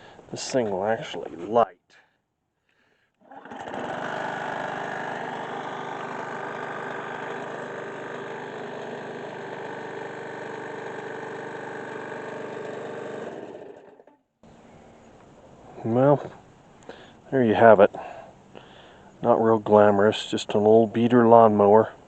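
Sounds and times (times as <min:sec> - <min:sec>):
lawn mower engine running: 0:03.2 - 0:14.1.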